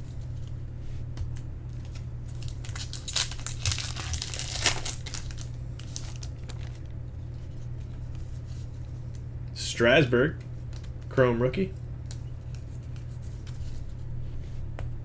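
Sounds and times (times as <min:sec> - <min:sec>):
steady low hum: 0:00.0 - 0:15.0
wrapper crinkling and tearing: 0:01.9 - 0:06.9.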